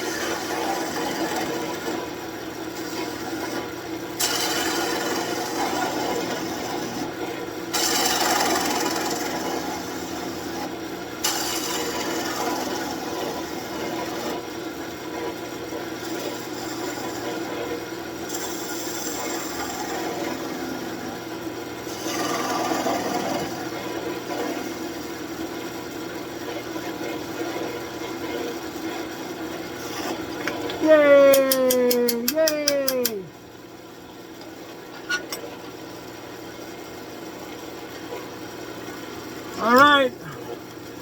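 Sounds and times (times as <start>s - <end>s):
turning tool scraping wood: 0.0s - 2.1s, 2.8s - 7.1s, 7.8s - 10.7s, 21.8s - 23.8s, 29.8s - 30.6s
lathe motor hum: 4.2s - 7.1s.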